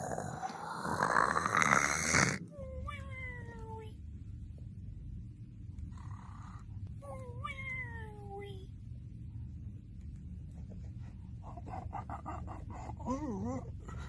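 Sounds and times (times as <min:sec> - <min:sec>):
low hum: 0:02.4 - 0:14.0.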